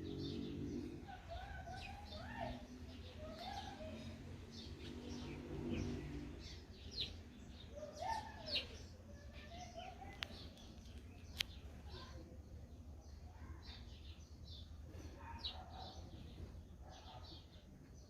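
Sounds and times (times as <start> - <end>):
rising and falling bird calls: 0.0 - 9.0
small birds chirping: 0.0 - 18.0.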